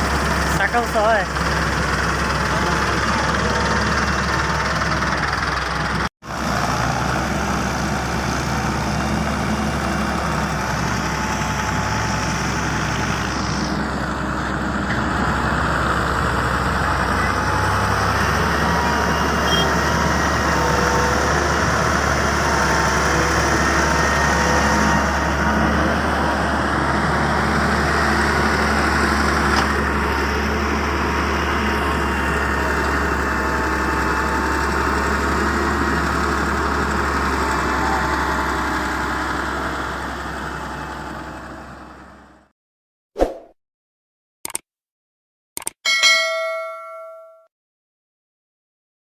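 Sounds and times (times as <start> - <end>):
heavy machinery engine running: 0.0 - 42.4
bell-like chime: 45.9 - 47.5.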